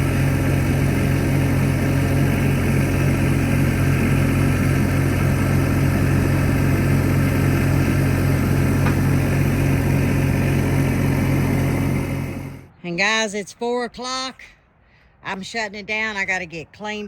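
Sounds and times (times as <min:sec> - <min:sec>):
skid steer engine running: 0:00.0 - 0:12.7.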